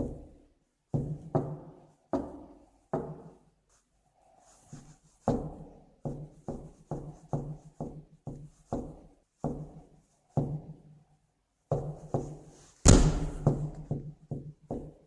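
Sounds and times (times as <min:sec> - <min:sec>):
knocking on a door: 0:12.9 - 0:15.0.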